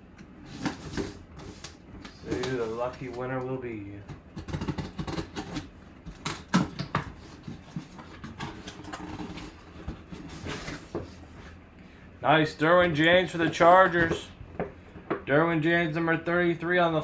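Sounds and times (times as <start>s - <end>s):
cardboard and plastic packaging rustling: 0.4s - 11.6s
packaging clicks and knocks: 4.1s - 10.1s.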